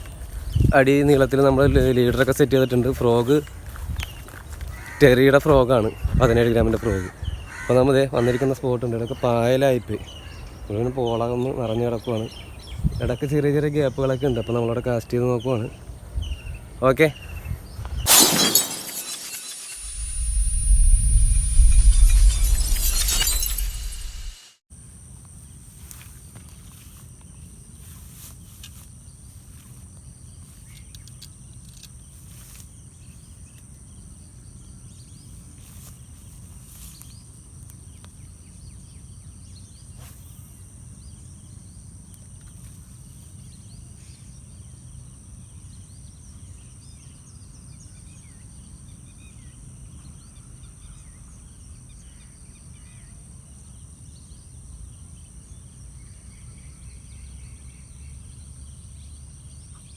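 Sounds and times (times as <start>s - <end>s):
high-pitched insect chorus: 0.0s - 17.5s, 18.1s - 24.5s
bird chirps: 0.0s - 24.4s.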